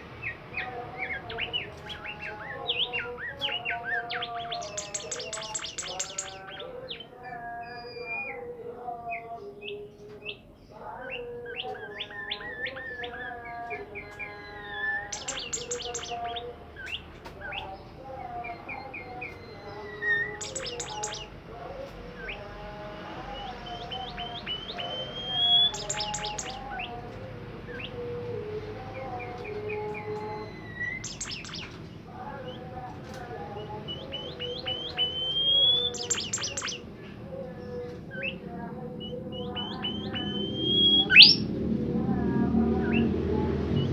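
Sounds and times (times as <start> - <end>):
fast rattling bird chatter: 0.0 - 7.2, 11.5 - 41.5
songbird singing: 0.0 - 43.9.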